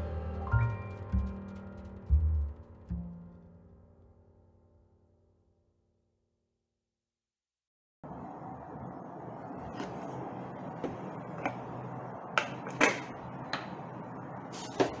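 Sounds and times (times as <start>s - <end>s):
room hiss and hum: 8.0s - 15.0s.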